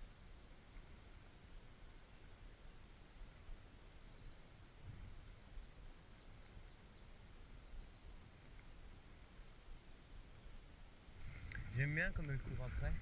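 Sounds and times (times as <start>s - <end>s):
faint low outdoor rumble: 0.0s - 13.0s
small bird chirping: 2.0s - 8.4s.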